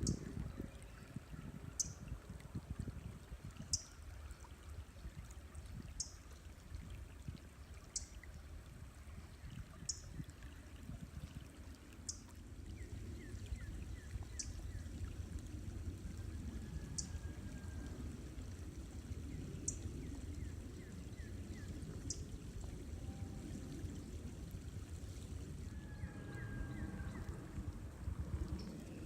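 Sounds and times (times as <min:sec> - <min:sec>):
river water flowing: 0:03.2 - 0:17.2.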